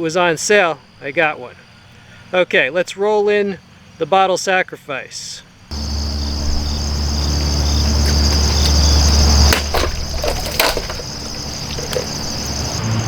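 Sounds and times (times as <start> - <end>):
construction machinery rumbling: 5.7 - 13.0
insects buzzing: 5.7 - 13.0
sharp knocks: 8.1 - 12.8.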